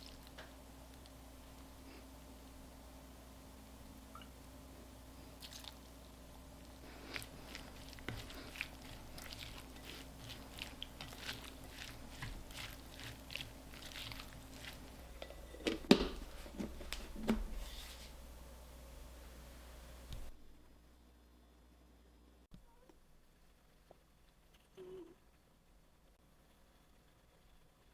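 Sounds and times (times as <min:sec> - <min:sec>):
knife chopping crisp vegetables: 0:06.9 - 0:15.0.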